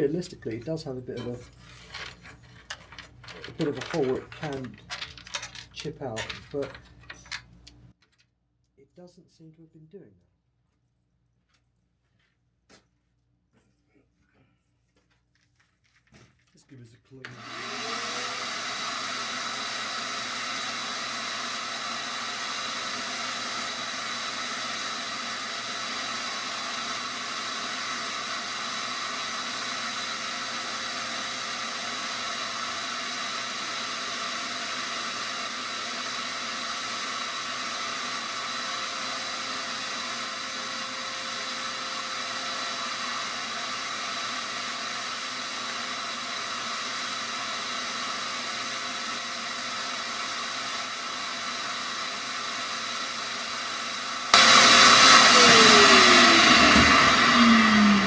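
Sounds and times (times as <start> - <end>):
shop vacuum sucking sawdust: 0.0 - 7.2, 17.3 - 58.0.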